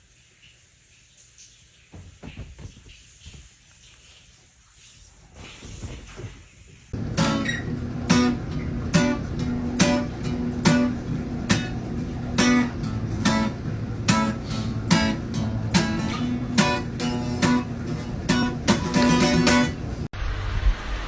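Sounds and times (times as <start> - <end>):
acoustic guitar strumming: 7.0 - 20.1.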